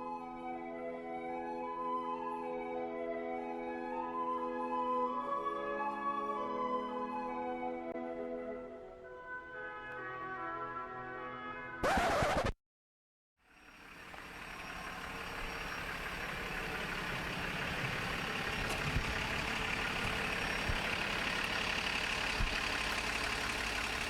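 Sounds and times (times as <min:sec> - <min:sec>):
engine running steadily: 0:13.5 - 0:24.0.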